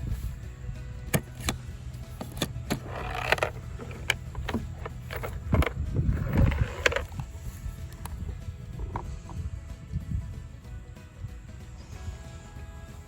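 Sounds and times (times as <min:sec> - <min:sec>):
metal toolbox lid clicks and knocks: 0:01.1 - 0:07.2
metal toolbox rattle: 0:01.1 - 0:09.1.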